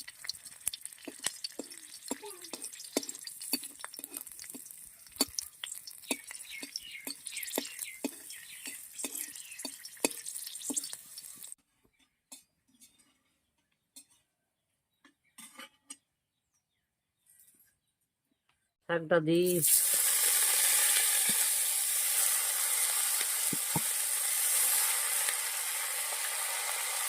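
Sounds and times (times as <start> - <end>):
garlic sizzling in hot oil: 0.0 - 11.6, 19.5 - 27.0
spatula knocking against wok: 6.1 - 11.0.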